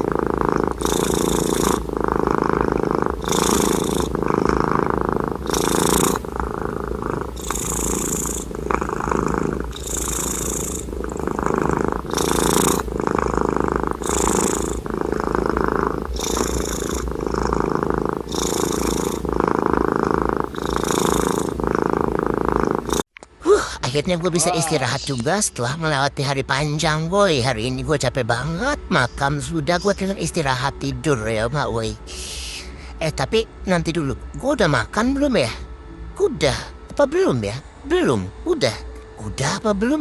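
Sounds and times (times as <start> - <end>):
cat snoring: 0.0 - 23.1.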